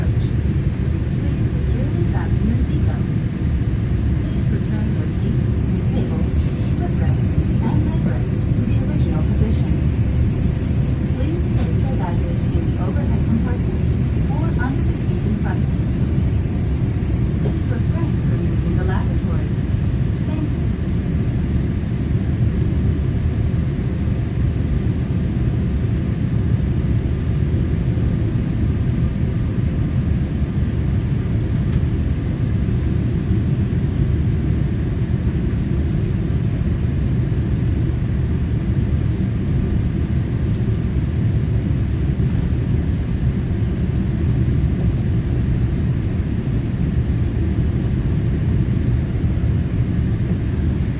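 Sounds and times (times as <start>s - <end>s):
airflow noise: 0.0s - 22.2s
airliner cabin engine rumble: 0.0s - 50.9s.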